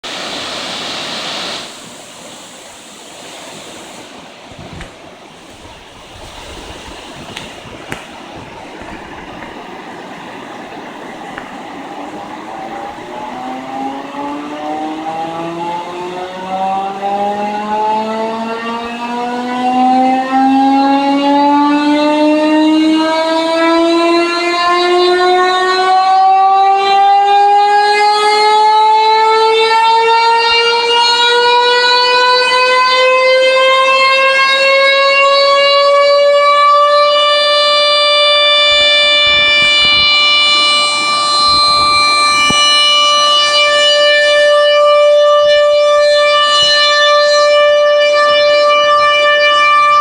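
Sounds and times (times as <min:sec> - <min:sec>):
background hiss: 0:00.1 - 0:13.4
warning siren rising tone: 0:05.5 - 0:50.0.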